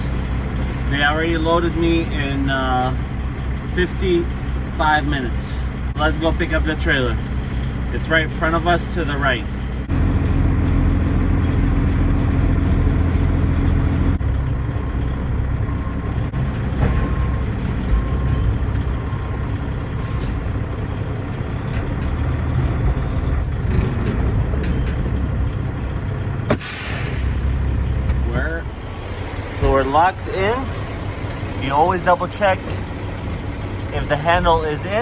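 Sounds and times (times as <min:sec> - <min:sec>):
diesel truck engine running: 0:00.0 - 0:35.0
metal clanks: 0:23.6 - 0:26.8
air release hiss: 0:26.5 - 0:27.5.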